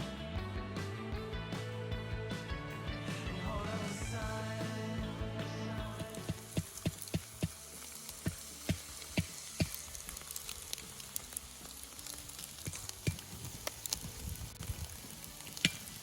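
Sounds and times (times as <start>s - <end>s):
fish sizzling on coals: 5.9s - 16.0s
crackling pops: 6.0s - 16.0s.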